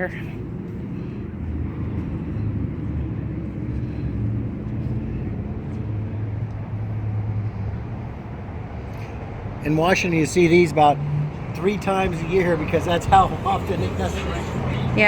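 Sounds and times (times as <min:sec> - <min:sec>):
car engine running: 0:09.6 - 0:15.0.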